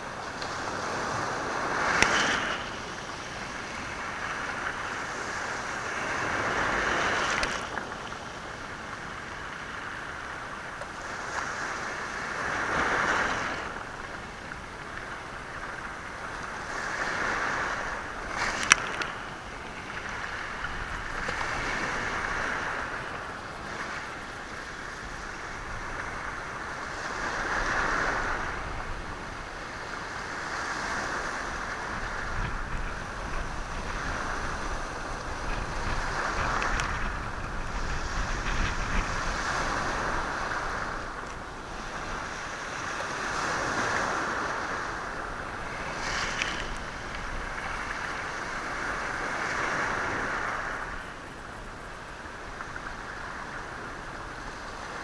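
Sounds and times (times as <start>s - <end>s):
waves washing onto stony shore: 0.0s - 55.0s.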